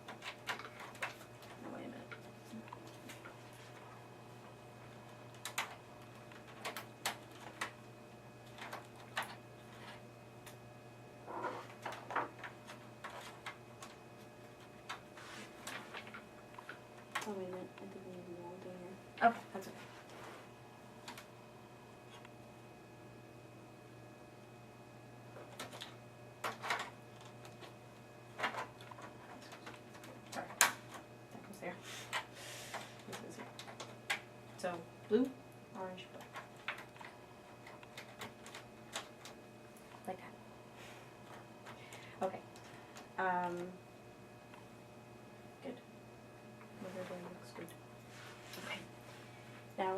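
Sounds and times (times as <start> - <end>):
cables clicking and scraping: 0.0 - 4.0, 4.8 - 10.6, 11.3 - 20.2, 25.4 - 35.2, 35.8 - 43.8
steady low hum: 0.0 - 49.9.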